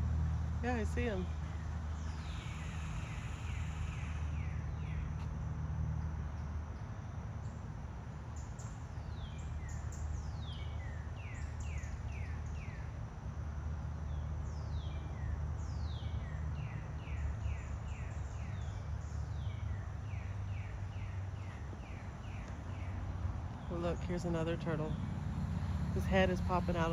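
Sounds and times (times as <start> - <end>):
steady low rumble: 17.0 - 26.9.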